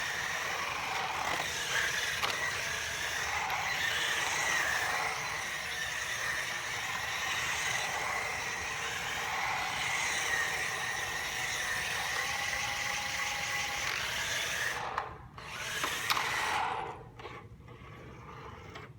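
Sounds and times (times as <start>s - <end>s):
robot vacuum motors whining: 0.0s - 18.9s
motor click: 14.8s - 16.8s.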